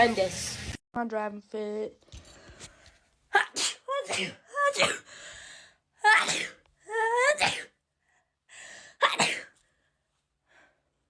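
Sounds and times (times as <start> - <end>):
person sneezing: 3.4 - 5.1, 6.1 - 6.6, 9.0 - 9.6.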